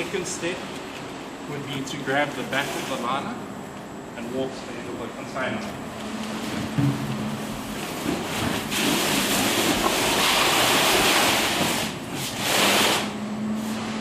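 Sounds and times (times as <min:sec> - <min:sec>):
plastic liner rustling and scraping: 0:06.1 - 0:13.8.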